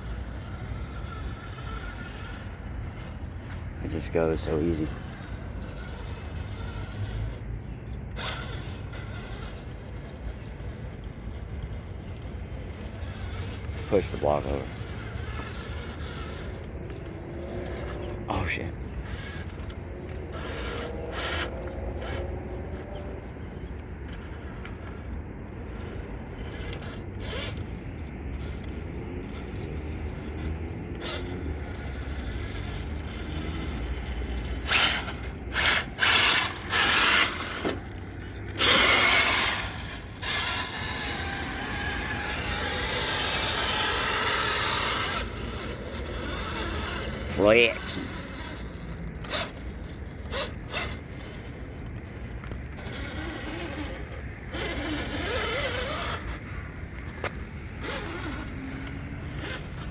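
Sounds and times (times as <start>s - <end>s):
rc truck motor whine: 0.0s - 59.9s
scraping and rushing noises: 12.8s - 59.9s.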